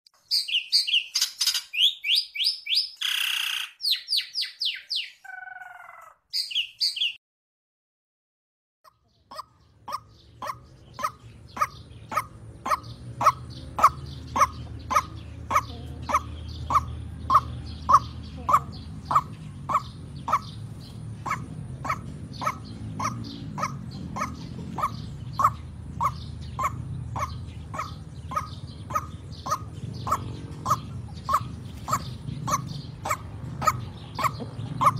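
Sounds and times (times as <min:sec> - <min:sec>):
waterhen calling harsh notes: 0:08.9 - 0:34.9.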